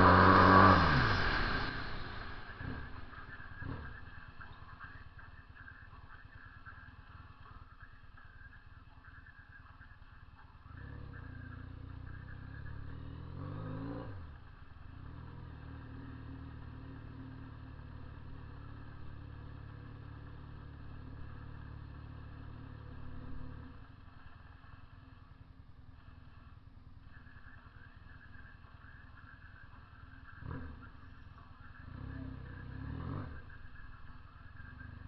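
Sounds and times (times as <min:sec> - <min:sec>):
motorcycle engine running: 0:00.0 - 0:35.0.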